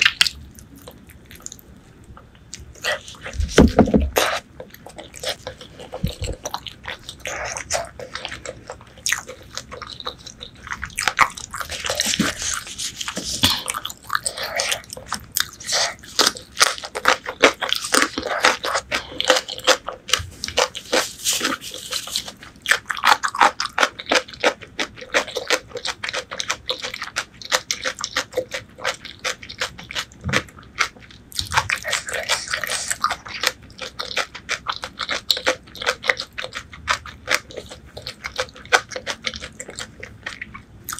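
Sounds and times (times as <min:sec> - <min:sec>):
person chewing meat: 0:00.0 - 0:40.9.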